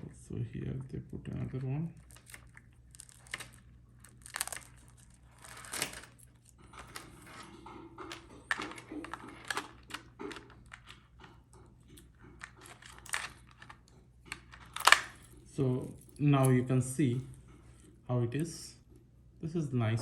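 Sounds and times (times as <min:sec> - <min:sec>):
plastic film peeling and crinkling: 0:01.4 - 0:11.1.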